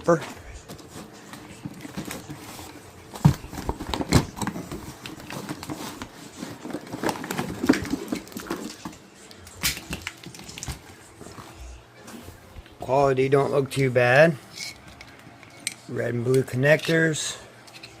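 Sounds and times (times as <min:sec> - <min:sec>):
paper rustling: 0:00.1 - 0:12.4.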